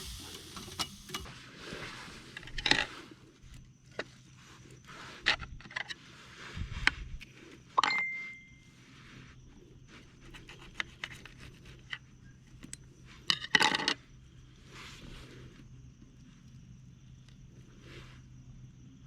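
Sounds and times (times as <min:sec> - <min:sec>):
quick rattle of clicks: 0:00.0 - 0:01.3.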